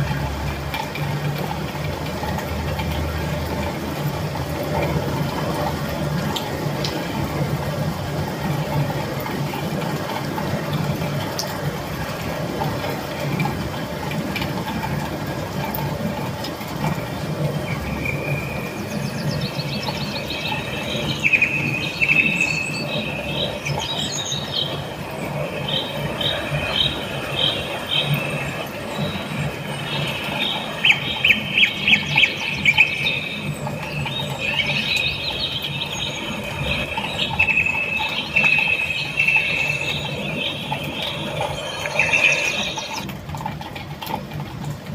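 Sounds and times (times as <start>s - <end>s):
steady rain: 0.0s - 44.9s
high-pitched chirping calls: 17.7s - 43.0s.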